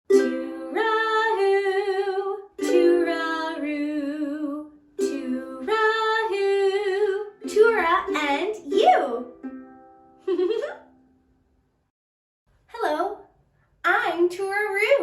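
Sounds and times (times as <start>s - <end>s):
woman singing with vibrato: 0.1s - 9.2s.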